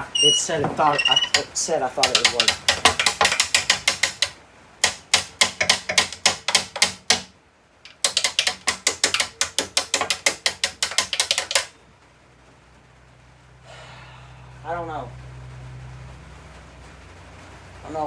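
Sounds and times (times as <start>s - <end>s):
ratchet wrench clicking: 0.0s - 7.3s, 7.9s - 11.7s.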